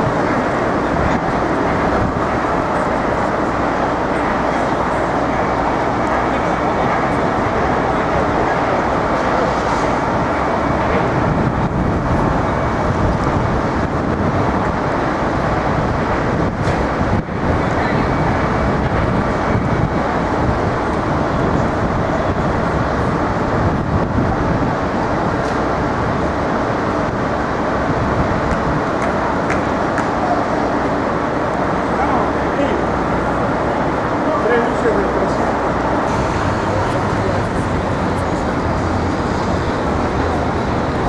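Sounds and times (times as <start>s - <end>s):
road traffic: 0.0s - 41.0s.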